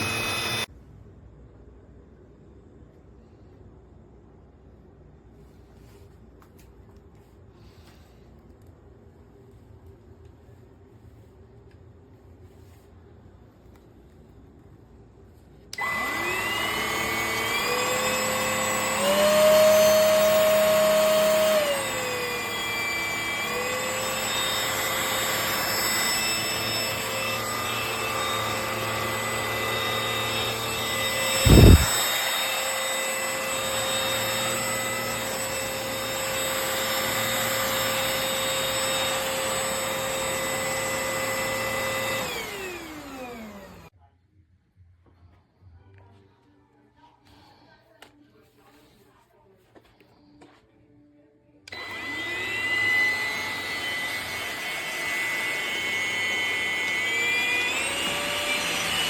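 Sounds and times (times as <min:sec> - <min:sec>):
vacuum cleaner motor whine: 0:00.0 - 0:00.7, 0:15.8 - 0:43.9, 0:51.7 - 0:59.0.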